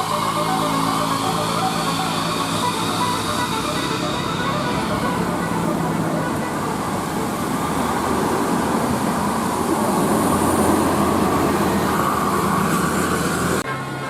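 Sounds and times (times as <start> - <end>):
bus engine passing: 0.0 - 14.0
tyre and road noise: 0.0 - 14.0.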